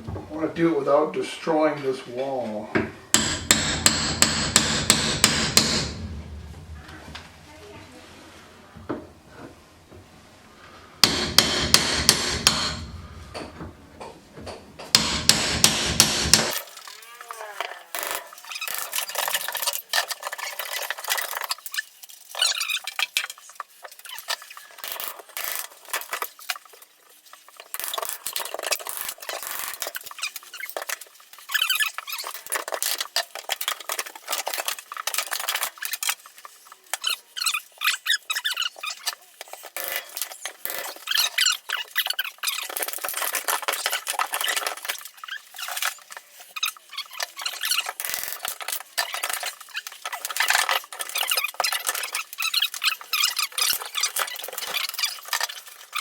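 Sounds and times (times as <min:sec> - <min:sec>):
sharp hammer blows: 0:03.1 - 0:06.8, 0:11.0 - 0:13.2, 0:14.9 - 0:16.5
wood cracking and creaking: 0:16.4 - 0:56.0.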